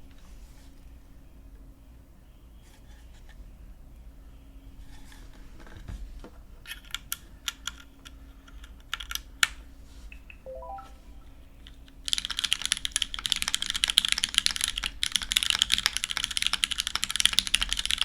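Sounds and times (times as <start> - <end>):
mechanical keyboard typing: 12.1 - 18.0.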